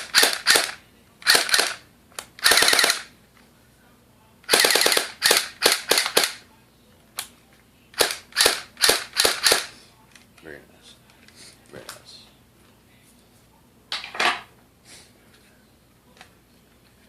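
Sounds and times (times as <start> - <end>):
airsoft gun firing: 0.1 - 1.8, 2.4 - 3.1, 4.5 - 6.4, 8.0 - 9.7.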